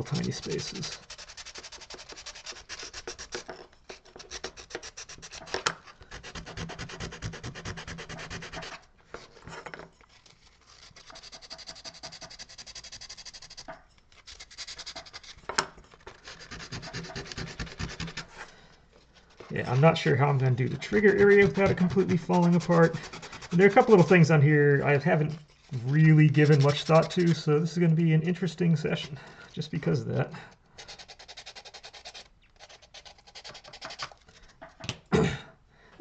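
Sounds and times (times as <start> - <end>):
sandpaper rubbing wood: 0.0 - 8.8, 10.6 - 15.4, 16.1 - 18.4, 20.6 - 24.3, 25.7 - 27.5, 30.8 - 34.2.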